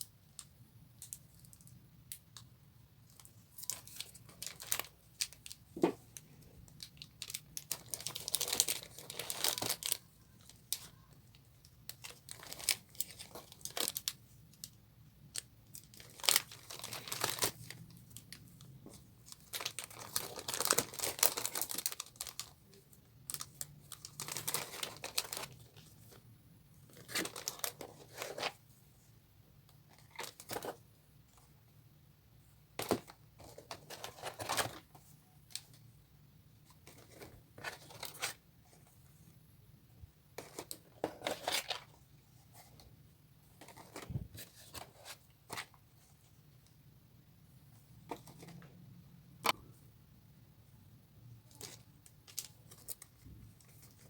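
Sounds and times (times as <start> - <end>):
packaging tearing and crinkling: 7.2 - 10.0, 19.5 - 22.5.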